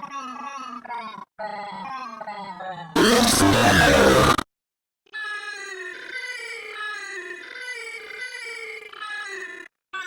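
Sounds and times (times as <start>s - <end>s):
drawn-out pitched voice: 3.0s - 4.4s
loud noisy electronic music blast: 3.0s - 4.4s.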